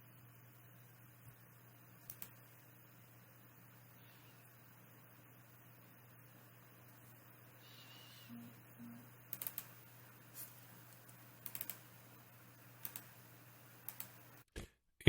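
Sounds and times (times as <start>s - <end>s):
steady low hum: 0.0s - 14.5s
keyboard and mouse clicking: 2.0s - 2.4s, 9.3s - 9.8s, 11.0s - 11.9s, 12.8s - 13.2s, 13.8s - 14.2s.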